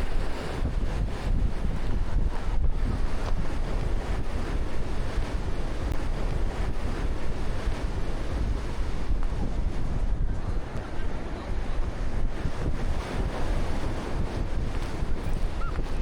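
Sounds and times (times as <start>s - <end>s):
surf breaking on beach: 0.0s - 16.0s
wind buffeting microphone: 0.0s - 16.0s.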